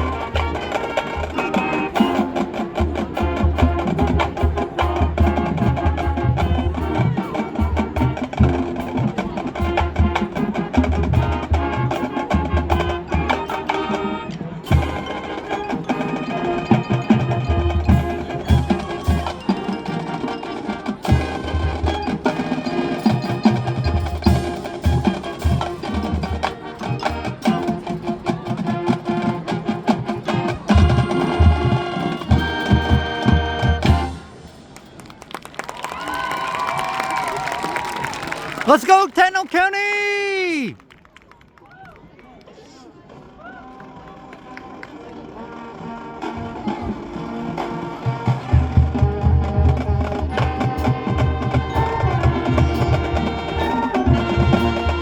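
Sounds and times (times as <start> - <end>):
marching band playing: 0.0 - 34.6, 35.9 - 40.8, 45.6 - 55.0
drums: 0.0 - 34.8, 46.2 - 55.0.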